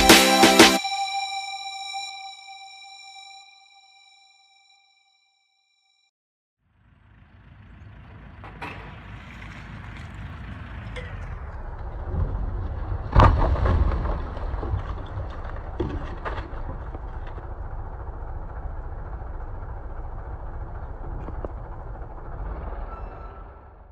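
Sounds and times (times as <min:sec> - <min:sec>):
heavy machinery engine running: 0:06.6 - 0:23.9
crash of falling debris: 0:08.5 - 0:20.2.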